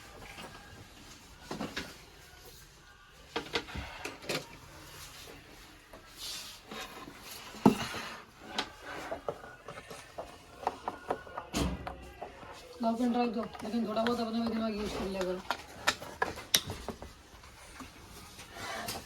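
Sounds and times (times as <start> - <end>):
clicks and knocks of tools handled: 13.6 - 17.1.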